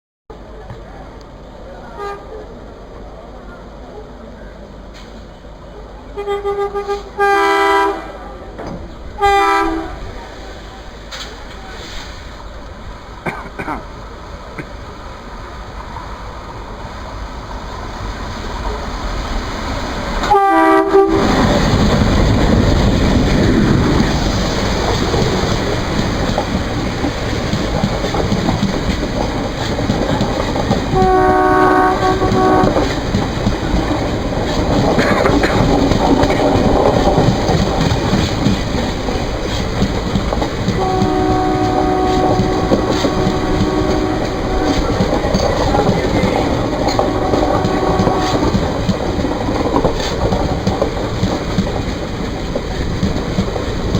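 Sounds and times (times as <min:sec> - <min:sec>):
coaches rattling over rails: 0:00.4 - 0:53.9
diesel locomotive horn: 0:01.9 - 0:02.4, 0:06.1 - 0:08.5, 0:09.2 - 0:10.2, 0:20.2 - 0:21.6, 0:30.9 - 0:33.0, 0:40.7 - 0:49.4
train horn short toots: 0:06.2 - 0:08.3, 0:09.2 - 0:10.1, 0:20.2 - 0:21.4, 0:30.9 - 0:32.9, 0:40.8 - 0:45.2, 0:46.7 - 0:49.2.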